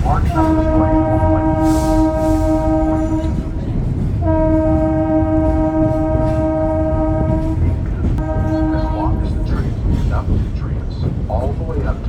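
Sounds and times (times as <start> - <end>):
train horn blasts: 0.1 - 9.6.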